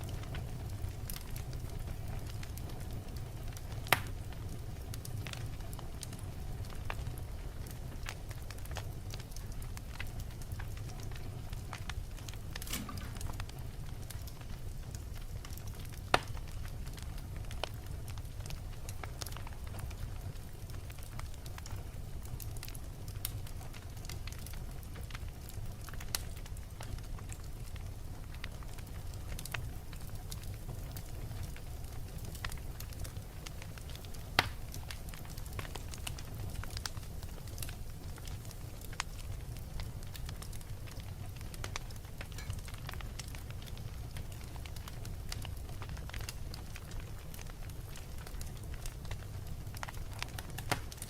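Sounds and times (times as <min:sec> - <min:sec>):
fire crackles: 0:00.0 - 0:51.0
wood fire rumbling: 0:00.0 - 0:51.0
loud fire pop: 0:12.5 - 0:13.6.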